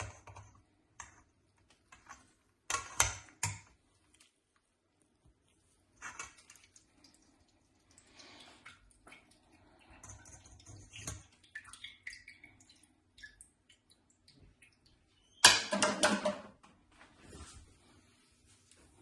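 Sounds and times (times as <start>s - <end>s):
small clicks of containers: 0.0s - 4.7s, 5.9s - 12.6s.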